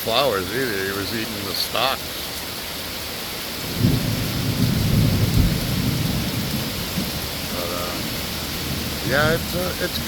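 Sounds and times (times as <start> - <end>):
heavy rain: 0.0 - 10.0
thunder rumbling: 3.6 - 10.0.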